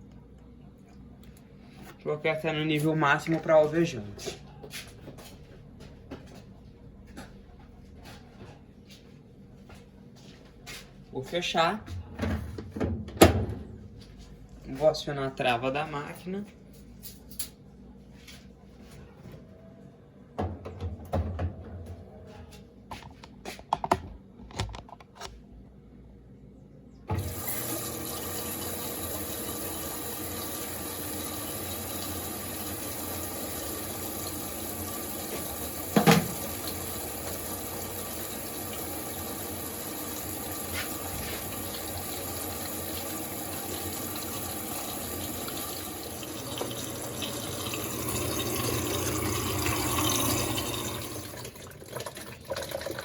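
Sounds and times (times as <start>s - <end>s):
water rushing into washer drum: 27.1s - 53.0s.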